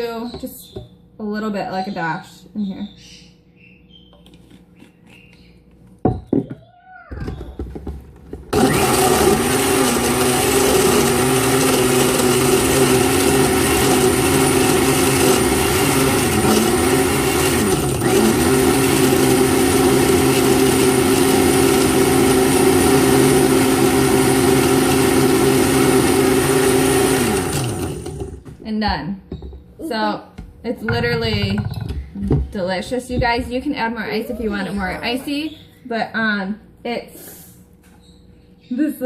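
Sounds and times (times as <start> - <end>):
blender blending ice: 8.5 - 28.4.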